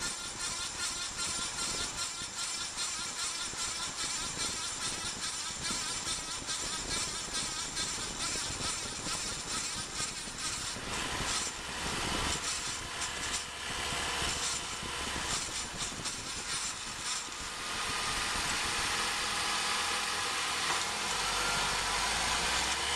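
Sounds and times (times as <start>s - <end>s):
car driving noise under axle: 9.6s - 22.9s.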